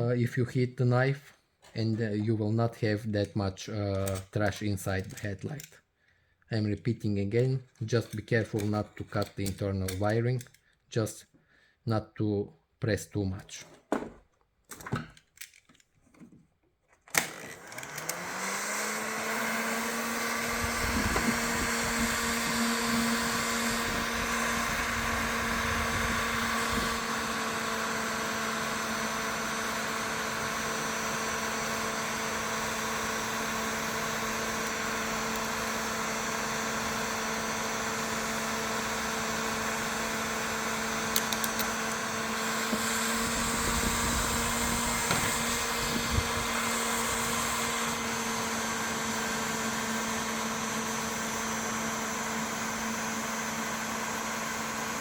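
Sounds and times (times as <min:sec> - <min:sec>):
heat gun fan humming: 0:17.1 - 0:55.0
heat gun switch click: 0:41.1 - 0:42.0.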